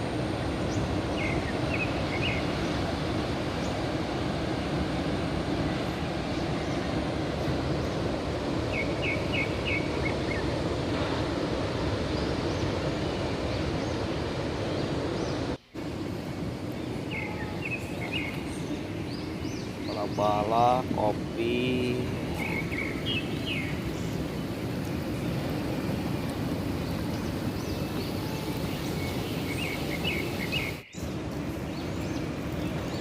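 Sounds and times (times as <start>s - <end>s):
sea surf rushing: 0.0s - 33.0s
bird chirping: 8.7s - 10.5s, 16.8s - 33.0s.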